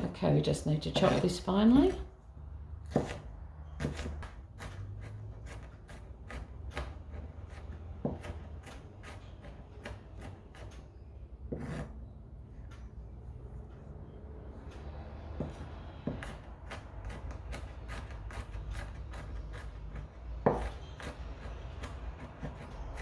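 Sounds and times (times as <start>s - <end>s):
knife chopping on a board: 0.9s - 2.0s, 2.8s - 10.7s, 11.5s - 11.9s, 15.3s - 23.0s.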